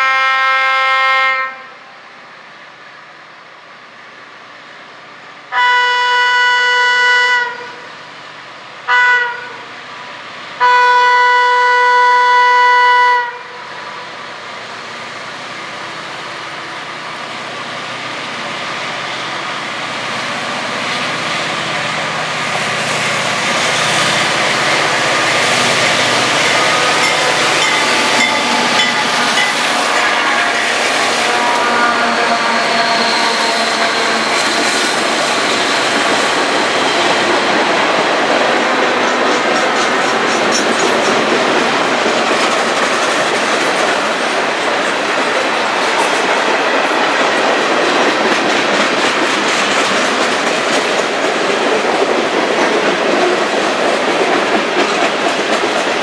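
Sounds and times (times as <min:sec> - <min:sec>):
diesel locomotive horn: 0:00.0 - 0:01.9, 0:05.5 - 0:07.9, 0:08.9 - 0:09.8, 0:10.6 - 0:13.8, 0:24.5 - 0:35.5
train rolling past: 0:00.0 - 0:56.0.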